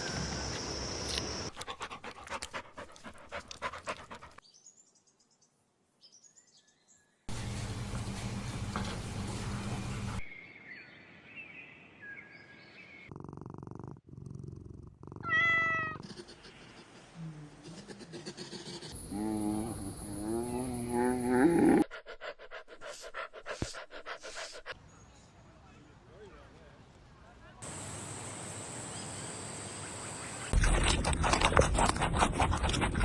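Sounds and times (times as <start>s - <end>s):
cat purring: 13.1s - 15.5s, 18.9s - 21.9s
cat meowing: 15.2s - 16.0s.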